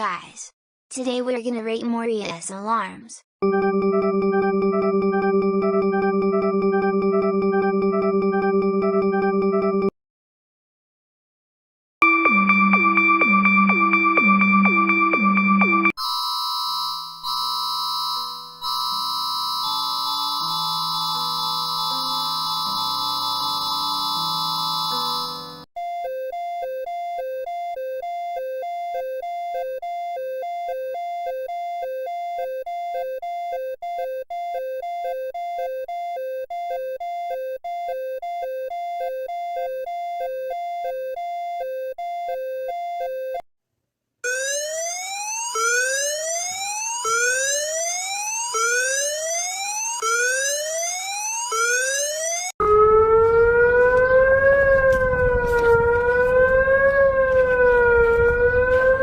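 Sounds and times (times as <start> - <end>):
siren rising and falling: 3.4 - 9.9, 12.0 - 43.4, 44.2 - 59.0
two-tone alert signal: 3.4 - 9.9, 12.0 - 43.4.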